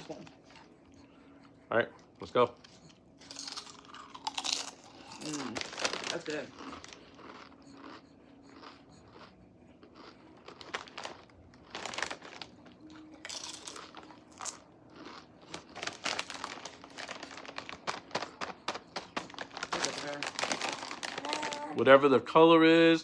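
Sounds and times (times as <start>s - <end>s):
chips crunching while chewed: 2.6s - 21.8s
chip bag crinkling: 3.2s - 8.0s, 10.0s - 21.8s.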